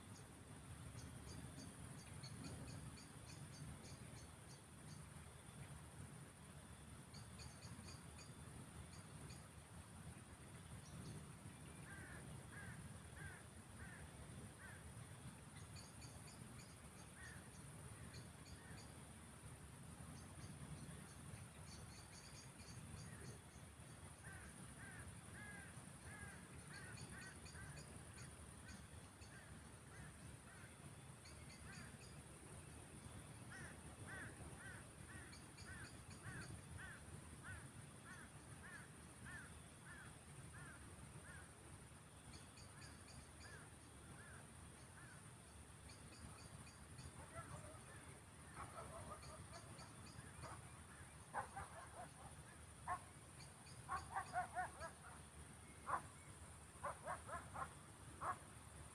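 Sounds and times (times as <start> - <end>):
frogs calling: 33.3 - 41.6, 45.9 - 58.6.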